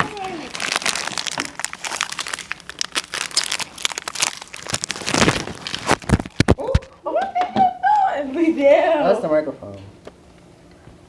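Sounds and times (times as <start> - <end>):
snack packaging crinkling: 0.0 - 7.0.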